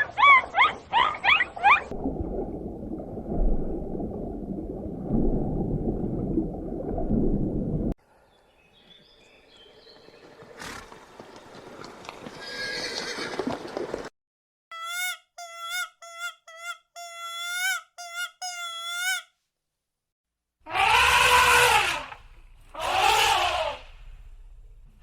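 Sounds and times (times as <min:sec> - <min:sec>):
long loud animal calls: 0:20.7 - 0:22.1, 0:22.8 - 0:23.9
short rising animal calls: 0:20.7 - 0:22.2, 0:22.8 - 0:24.0.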